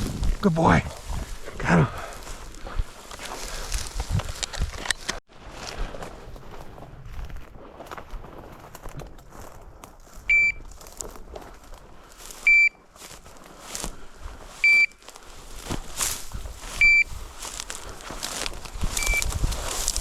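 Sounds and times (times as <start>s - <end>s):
high collar beeps: 10.3s - 10.6s, 12.5s - 12.8s, 14.6s - 15.0s, 16.8s - 17.1s, 19.0s - 19.3s.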